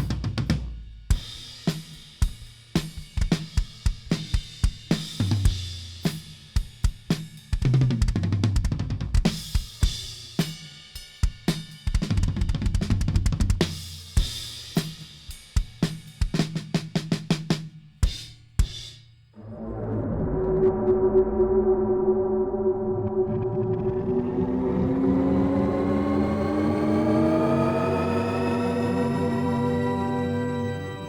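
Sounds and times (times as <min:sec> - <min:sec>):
drum kit groove: 0:00.0 - 0:19.1.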